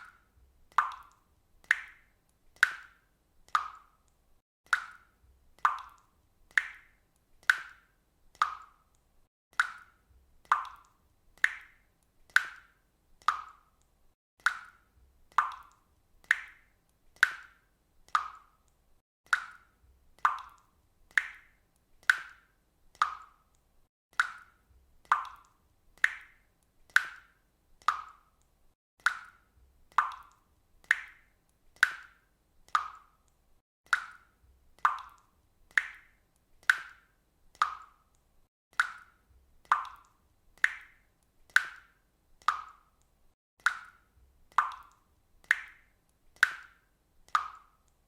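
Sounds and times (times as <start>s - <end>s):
water dripping: 0.0s - 48.0s.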